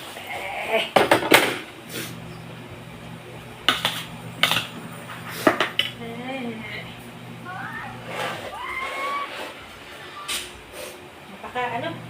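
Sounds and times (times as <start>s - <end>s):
low hum: 1.8s - 8.6s.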